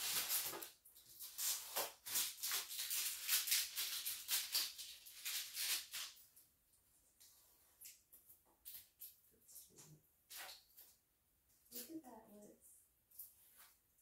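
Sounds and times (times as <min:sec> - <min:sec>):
plastic film crinkling: 0:00.0 - 0:06.4.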